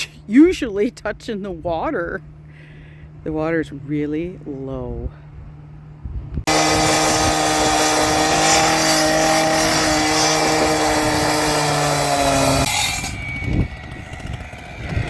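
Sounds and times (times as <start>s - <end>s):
skid steer engine revving: 6.5s - 15.0s.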